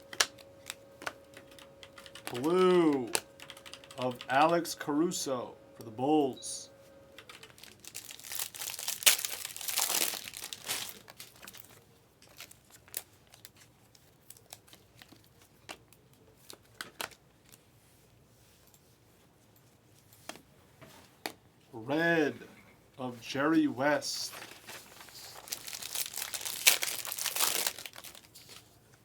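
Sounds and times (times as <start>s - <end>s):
foil wrapper tearing and crinkling: 7.5s - 15.5s, 24.8s - 28.6s.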